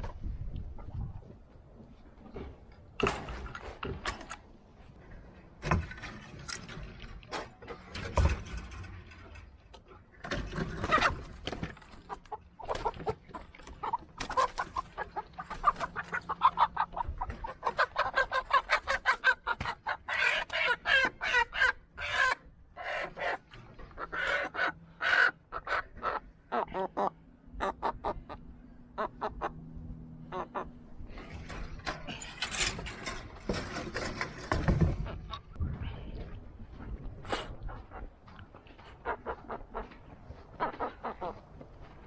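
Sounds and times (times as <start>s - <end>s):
chickens clucking: 9.3s - 35.6s, 36.8s - 42.0s.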